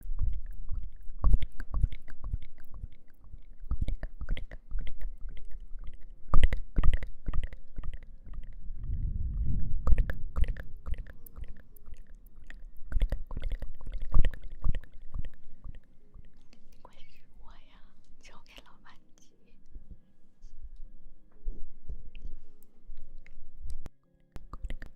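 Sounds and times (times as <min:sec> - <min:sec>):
crunching and chewing: 0:00.1 - 0:08.6, 0:09.9 - 0:16.7.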